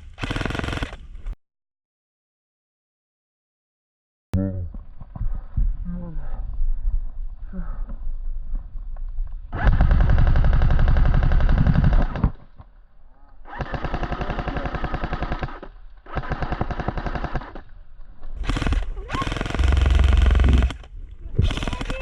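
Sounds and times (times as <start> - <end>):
airsoft rifle automatic fire: 0.0 - 1.0, 9.6 - 12.4, 13.5 - 17.7, 18.4 - 22.0.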